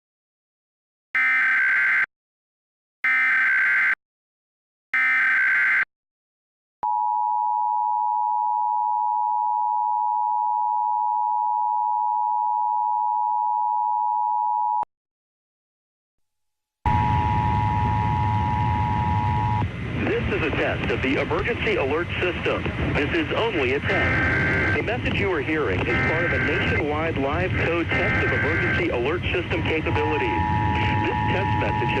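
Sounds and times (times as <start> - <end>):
two-tone attention signal: 16.9 - 19.6, 23.8 - 24.8, 25.9 - 26.9, 27.9 - 29.1, 29.7 - 32.0
digital data bursts: 23.5 - 32.0.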